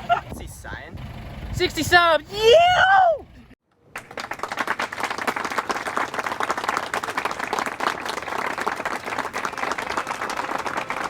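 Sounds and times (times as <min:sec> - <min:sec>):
crowd applause: 0:04.0 - 0:11.0.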